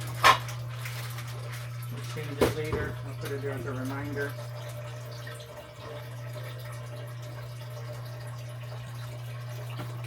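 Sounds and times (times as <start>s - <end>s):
tap water running and dripping: 0.0s - 10.0s.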